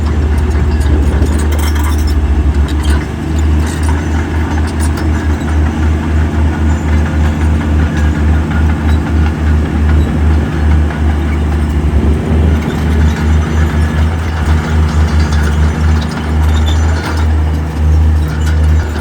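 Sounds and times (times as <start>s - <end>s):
heavy diesel engine rumbling: 0.0s - 19.0s.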